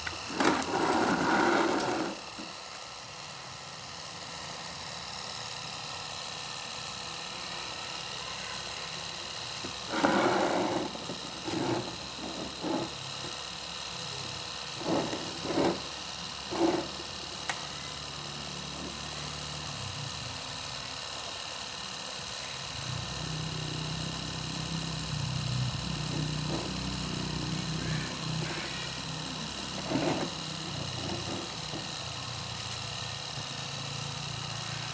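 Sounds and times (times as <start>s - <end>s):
small motor whining: 0.0s - 34.9s.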